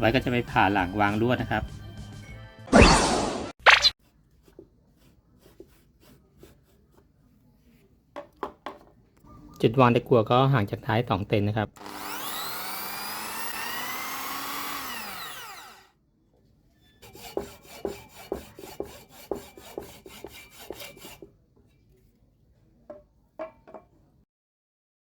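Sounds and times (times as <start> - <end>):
hand saw strokes on wood: 4.1 - 7.0, 11.9 - 15.8, 17.0 - 21.3
small power tool whining: 11.8 - 15.9.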